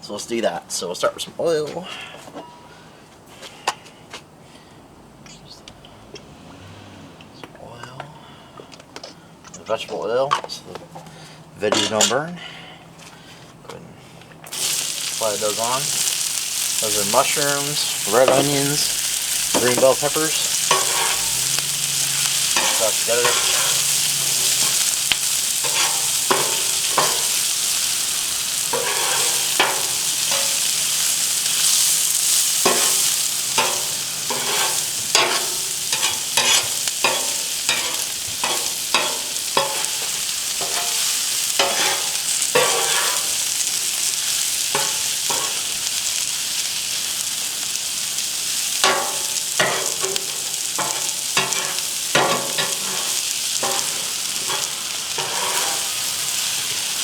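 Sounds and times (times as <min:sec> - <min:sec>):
spatula scraping griddle: 0:14.5 - 0:45.8, 0:48.8 - 0:57.0
vegetables sizzling in oil: 0:14.5 - 0:57.0.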